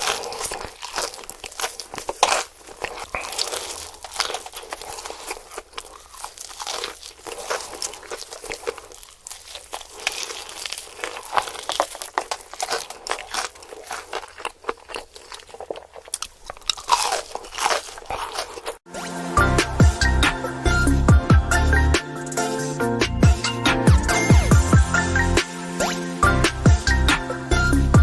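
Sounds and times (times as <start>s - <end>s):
crunching and chewing fried chicken: 0.0s - 18.9s.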